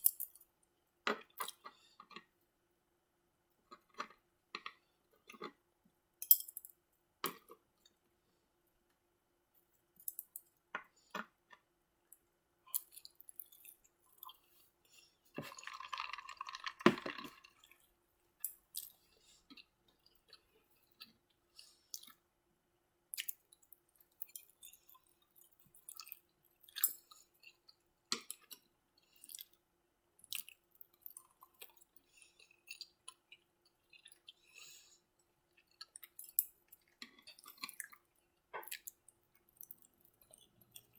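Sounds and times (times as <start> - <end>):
person chewing food: 3.7 - 5.6, 12.7 - 22.3, 23.1 - 29.6, 30.2 - 40.9.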